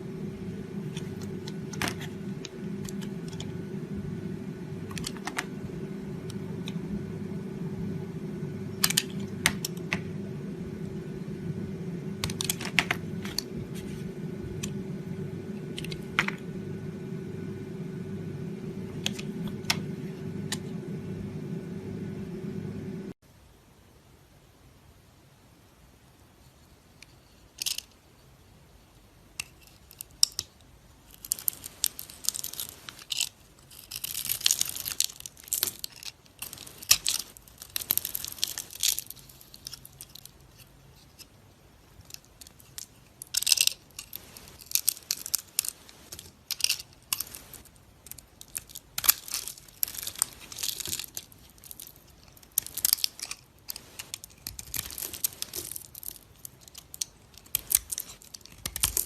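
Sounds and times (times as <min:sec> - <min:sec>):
crisp crunching and crackling: 0:31.2 - 0:40.4, 0:42.1 - 0:59.0.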